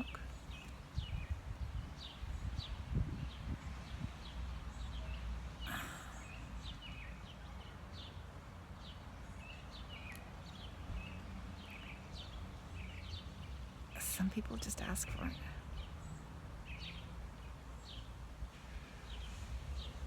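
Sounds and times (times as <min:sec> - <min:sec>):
birds chirping: 0:00.0 - 0:18.3
wind rumble on microphone: 0:00.1 - 0:05.3.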